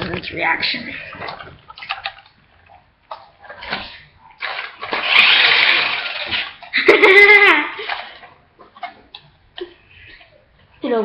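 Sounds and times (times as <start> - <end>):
toy car motor whirring: 4.8 - 6.6.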